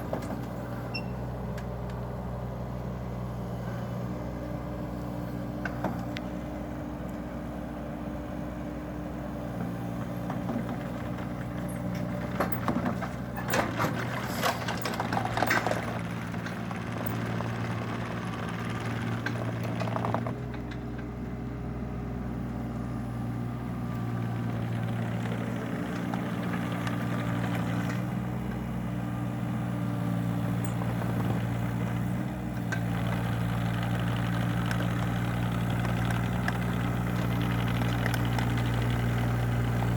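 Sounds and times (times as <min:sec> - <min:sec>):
excavator diesel engine running: 0:00.0 - 0:39.9
sharp metal clanks and knocks: 0:30.6 - 0:31.0.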